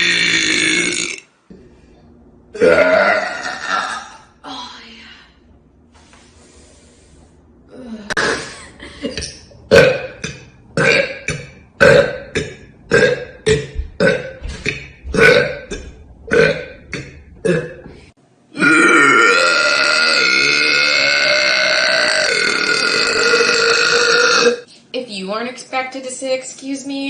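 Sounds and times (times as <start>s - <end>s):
person burping: 0.0s - 1.3s, 2.5s - 4.4s, 8.1s - 24.7s.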